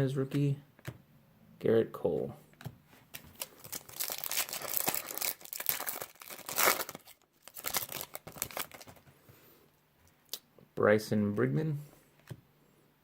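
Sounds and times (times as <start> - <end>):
foil wrapper crinkling and tearing: 3.2 - 9.0.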